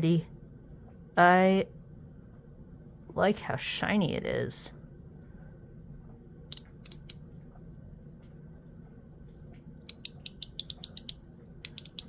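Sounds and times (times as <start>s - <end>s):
fidget slider clicking: 6.5s - 7.2s, 9.9s - 12.0s.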